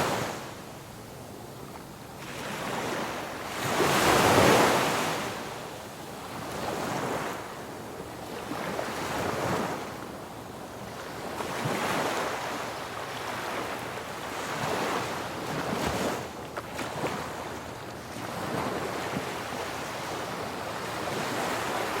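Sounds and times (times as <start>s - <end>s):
ocean waves breaking on beach: 2.2s - 5.6s, 10.8s - 22.0s.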